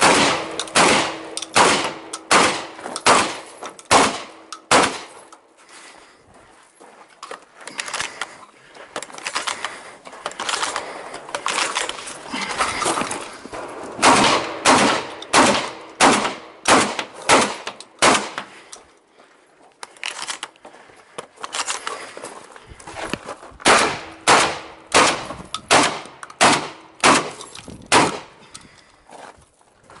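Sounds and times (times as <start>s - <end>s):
shotgun shots: 0.0s - 5.2s, 13.6s - 18.6s, 23.6s - 28.4s.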